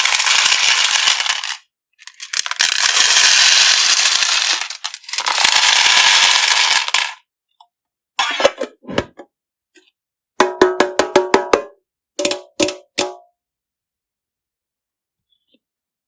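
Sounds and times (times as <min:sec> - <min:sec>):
hard candies rattling into tub: 0:00.0 - 0:07.2.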